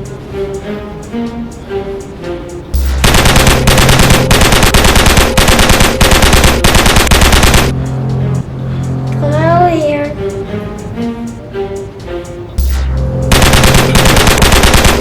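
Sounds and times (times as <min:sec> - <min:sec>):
low background music: 0:00.0 - 0:15.0
automatic gunfire: 0:03.0 - 0:07.7, 0:13.3 - 0:15.0.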